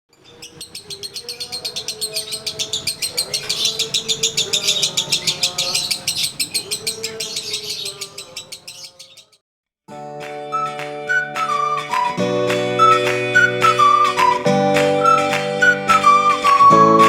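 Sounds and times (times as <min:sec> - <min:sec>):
lovebird chattering: 0:00.2 - 0:09.4.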